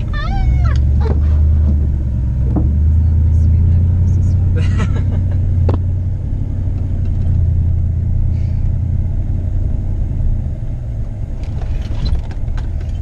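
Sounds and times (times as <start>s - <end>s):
truck engine and road rumble: 0.0s - 13.0s.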